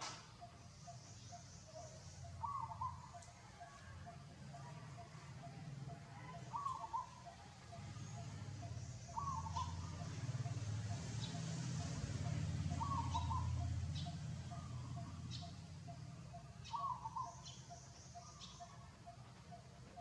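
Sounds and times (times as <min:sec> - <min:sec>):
low outdoor rumble: 0:00.0 - 0:20.0
chirping animal calls: 0:00.3 - 0:20.0
faint high ticks: 0:03.2 - 0:03.4.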